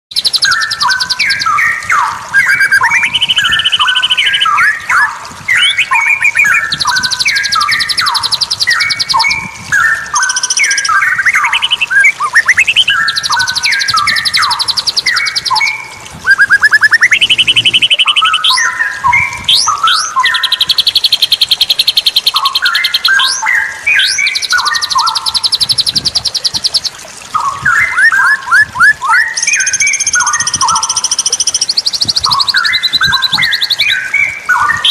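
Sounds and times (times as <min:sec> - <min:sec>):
high fast bird trills: 0:00.1 - 0:26.8, 0:27.4 - 0:34.9
bird singing warbled phrases: 0:00.1 - 0:34.9.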